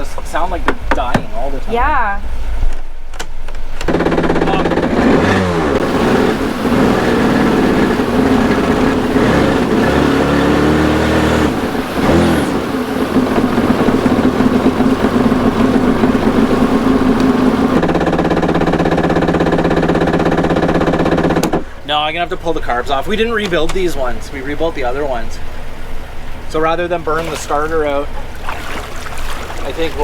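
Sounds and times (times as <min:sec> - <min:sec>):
electric starter cranking engine: 0:03.8 - 0:21.8.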